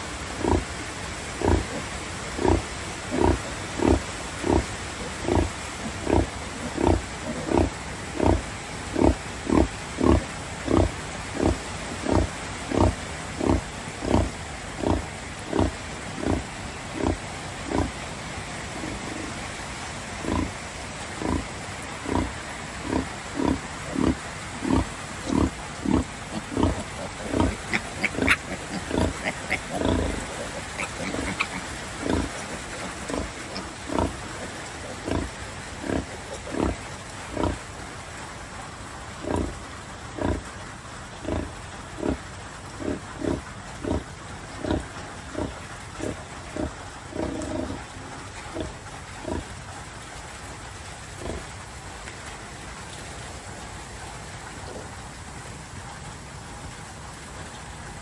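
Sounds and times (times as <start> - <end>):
sow grunting: 0.4 - 0.8, 1.4 - 18.0, 20.2 - 20.6, 21.2 - 37.6.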